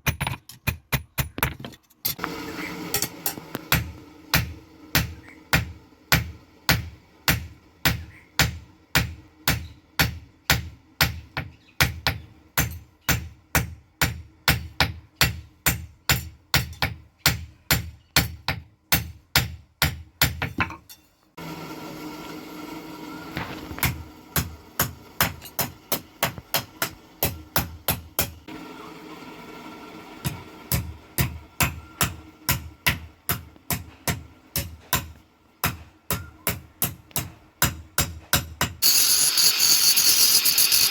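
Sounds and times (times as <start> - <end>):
hammer striking iron on anvil: 3.0 - 21.1, 23.8 - 28.4, 30.3 - 39.2.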